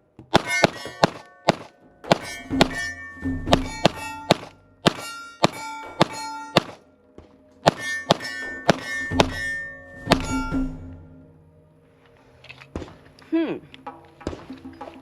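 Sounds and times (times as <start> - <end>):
pistol shots: 0.3 - 2.9, 3.5 - 6.8, 7.6 - 10.5
steel target ringing clang: 0.3 - 6.9, 7.6 - 11.3.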